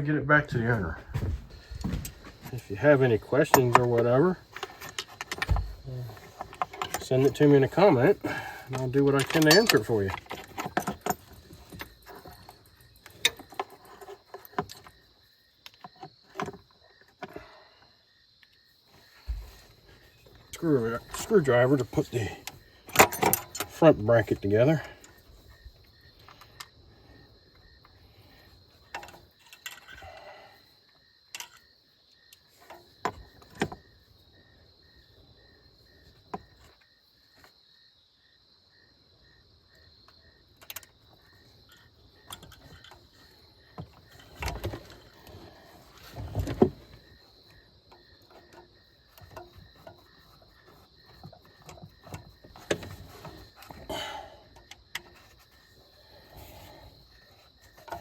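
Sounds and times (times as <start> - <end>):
crickets chirping: 0.0 - 58.0
screwdriver and metal parts clicking: 8.7 - 14.9.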